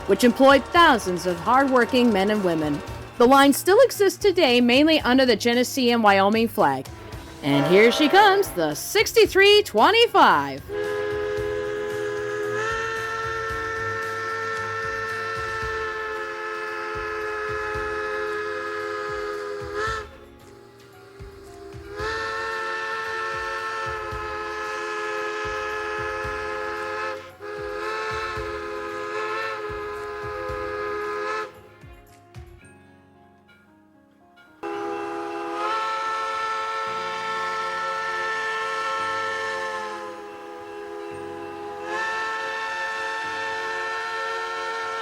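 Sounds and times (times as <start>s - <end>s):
steam whistle blasts: 0.0s - 5.2s, 6.6s - 31.7s, 34.6s - 45.0s
locomotive rumbling and thumps: 0.0s - 5.6s.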